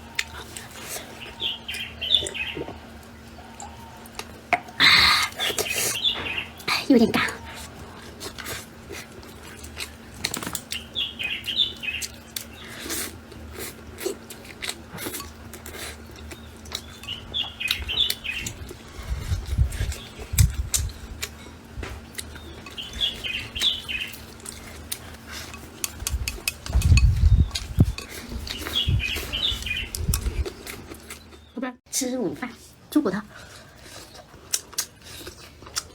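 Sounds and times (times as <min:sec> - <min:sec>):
bird chirping: 0:01.2 - 0:02.8
chewing clicks and smacks: 0:08.2 - 0:10.9, 0:19.8 - 0:28.8, 0:34.0 - 0:35.9.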